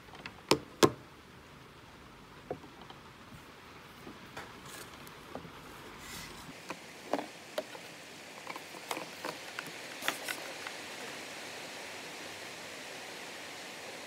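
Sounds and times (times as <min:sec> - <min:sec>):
faint steady hiss: 0:00.0 - 0:14.0
hands handling cable and phone: 0:06.7 - 0:10.8.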